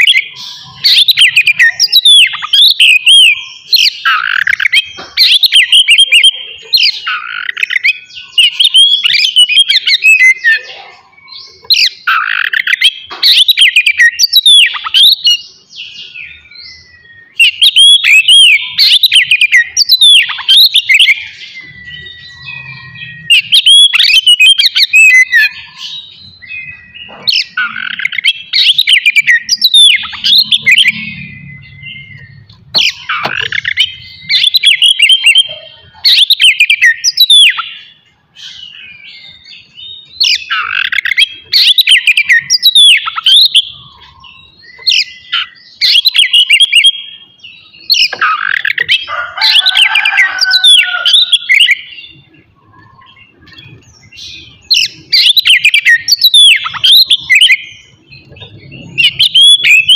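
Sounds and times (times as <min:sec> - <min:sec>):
bird singing whistles: 0:16.3 - 0:35.4, 0:40.1 - 0:47.0, 0:52.7 - 0:59.9.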